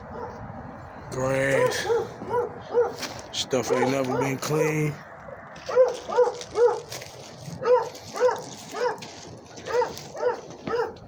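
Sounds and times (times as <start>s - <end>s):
dog barking: 0.1s - 0.4s, 1.6s - 4.6s, 5.6s - 6.9s, 7.6s - 11.0s.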